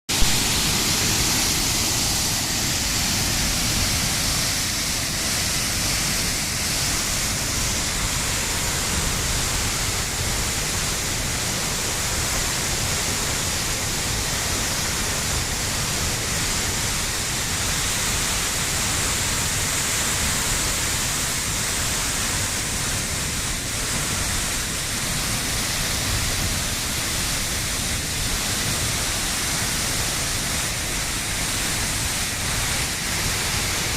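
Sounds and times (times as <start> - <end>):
waterfall roaring: 0.1 - 33.9.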